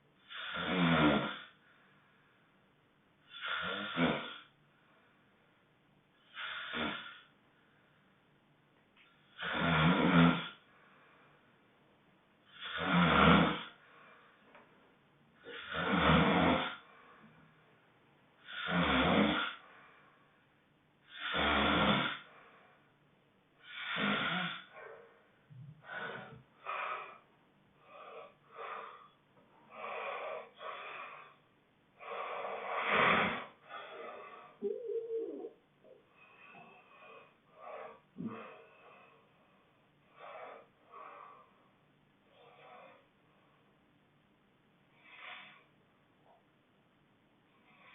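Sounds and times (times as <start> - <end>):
loud honking snoring: 0.3 - 1.5, 3.3 - 4.4, 9.4 - 10.6, 12.6 - 13.7, 15.5 - 16.8, 21.1 - 22.3, 23.7 - 24.7.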